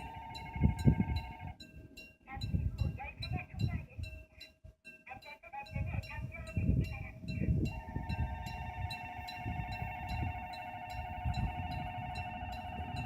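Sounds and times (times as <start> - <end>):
electronic warning bell tone: 0.0 - 1.6, 7.6 - 13.0
steady alarm tone: 0.0 - 1.7, 7.6 - 13.0.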